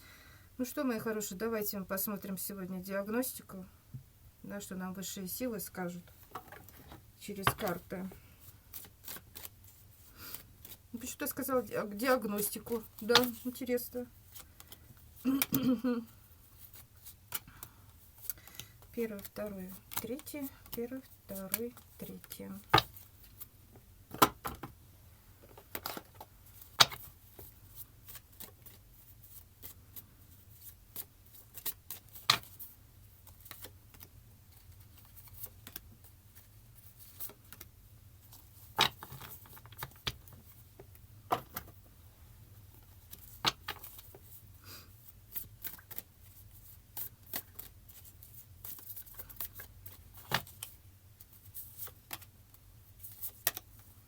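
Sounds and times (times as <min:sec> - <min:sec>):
cards tapping and slapping: 0:08.7 - 0:09.5, 0:12.9 - 0:13.4, 0:21.5 - 0:23.0, 0:25.4 - 0:27.5, 0:31.0 - 0:32.6, 0:38.7 - 0:41.8.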